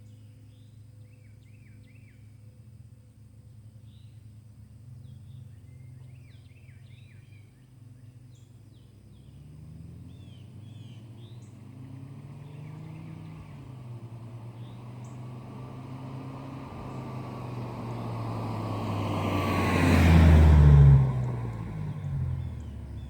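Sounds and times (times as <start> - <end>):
distant car engine drone: 0.1 - 23.0
birds chirping: 10.0 - 23.0.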